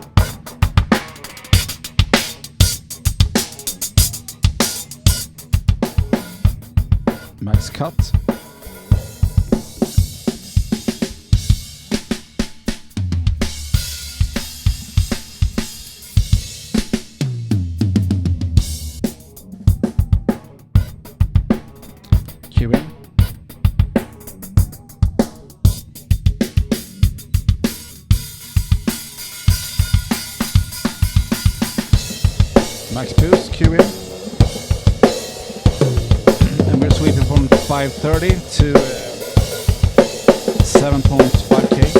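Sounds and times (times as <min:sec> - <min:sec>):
rock drum kit beat: 0:00.0 - 0:41.9.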